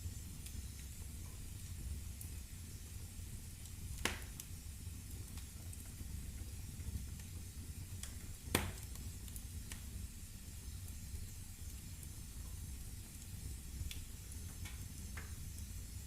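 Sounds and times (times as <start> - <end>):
firewood crackling: 0.0 - 16.0
sharp fire pops: 3.6 - 5.9, 8.0 - 9.9.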